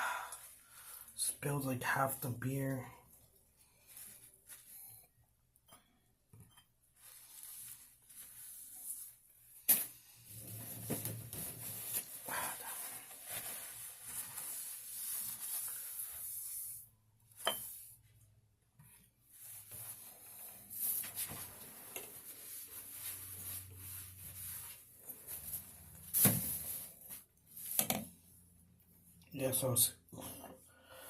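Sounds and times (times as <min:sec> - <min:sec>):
rustling and handling noises: 0:03.1 - 0:05.0, 0:06.7 - 0:16.8, 0:18.8 - 0:29.1.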